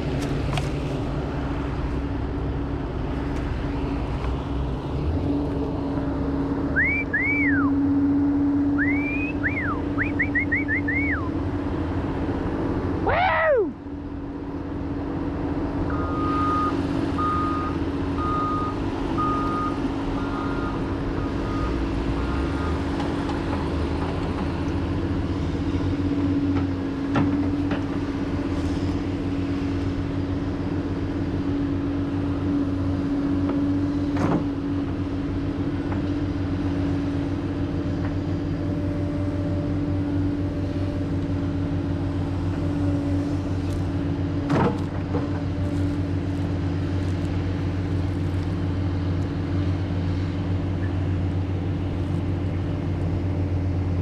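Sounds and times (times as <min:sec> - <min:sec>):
excavator engine running: 0:00.0 - 0:13.1, 0:13.7 - 0:54.0
reversing alarm beeping: 0:15.9 - 0:22.8.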